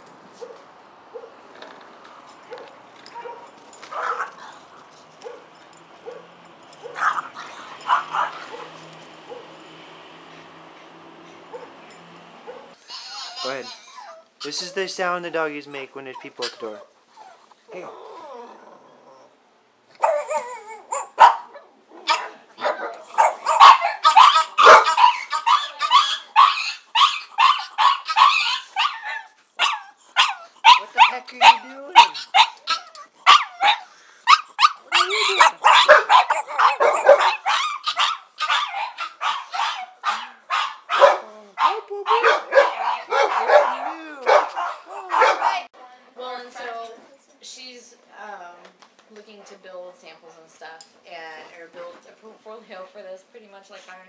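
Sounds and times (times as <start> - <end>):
dogs barking: 2.5 - 9.6, 11.3 - 12.8, 20.0 - 45.7
dog whimpering yelps: 12.7 - 14.8, 16.2 - 19.3, 20.0 - 21.2, 23.5 - 45.6.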